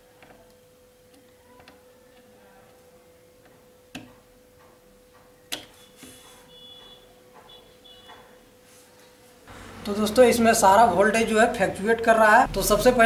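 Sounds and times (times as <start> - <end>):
probe tips clicking on circuit board: 5.5 - 5.8.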